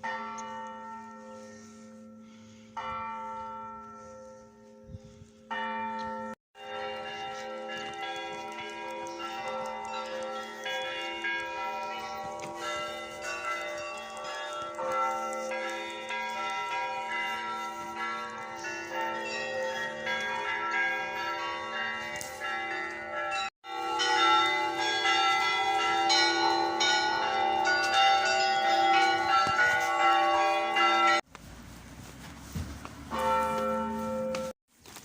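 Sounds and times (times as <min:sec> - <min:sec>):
church bells pealing: 0:00.0 - 0:31.3, 0:33.1 - 0:34.6.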